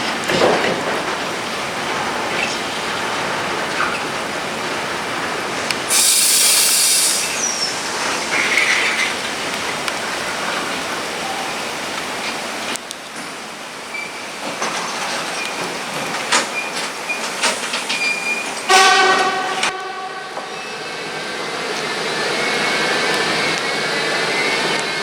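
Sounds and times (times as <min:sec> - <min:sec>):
train running on wet rails: 0:00.0 - 0:25.0
loud hiss burst: 0:05.9 - 0:09.1
short squeal: 0:17.9 - 0:18.7.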